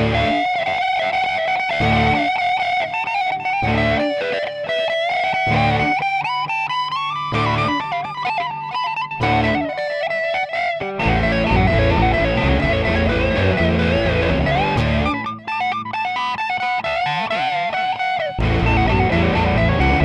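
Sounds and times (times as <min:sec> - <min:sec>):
backing band with heavy bass: 0:00.0 - 0:00.4, 0:01.8 - 0:02.3, 0:05.5 - 0:06.0, 0:09.2 - 0:09.7, 0:11.0 - 0:15.3, 0:18.4 - 0:20.0
guitar melody with slides: 0:00.0 - 0:20.0.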